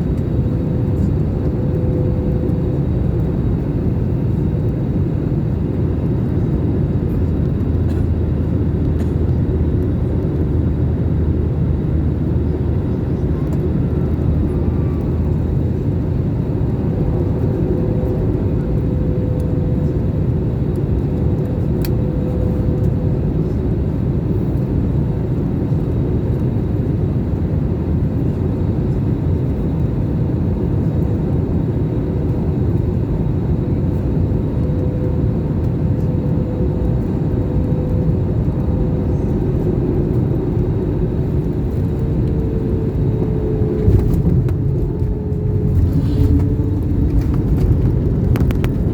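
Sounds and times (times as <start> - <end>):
airliner cabin rumble: 0.0 - 48.9.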